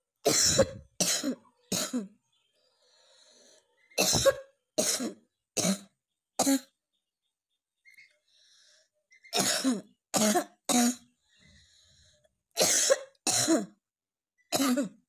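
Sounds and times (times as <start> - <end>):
person coughing: 0.3 - 2.2, 4.0 - 6.7, 9.4 - 11.0, 12.6 - 13.8, 14.6 - 15.0
faint breath: 2.6 - 3.9, 8.2 - 9.0, 11.2 - 12.4.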